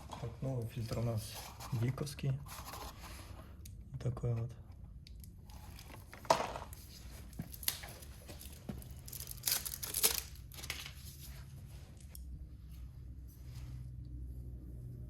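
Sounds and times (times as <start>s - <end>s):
packaging crinkling and tearing: 7.4s - 11.0s.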